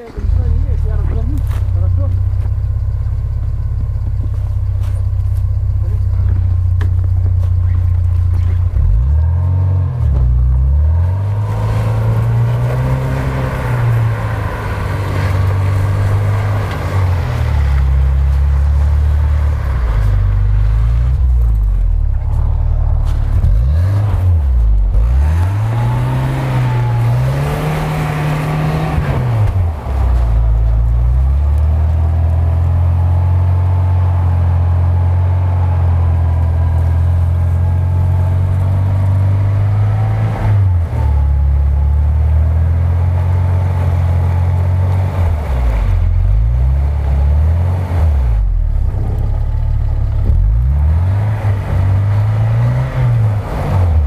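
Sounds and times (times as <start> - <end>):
car engine revving under load: 0.0 - 54.0.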